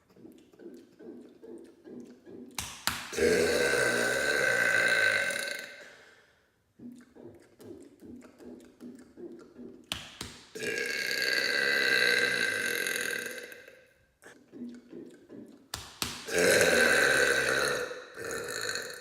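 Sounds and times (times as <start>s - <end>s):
gulping sounds: 0.0s - 6.1s, 6.8s - 19.0s
man burping: 3.1s - 6.0s, 10.6s - 13.8s, 16.3s - 19.0s.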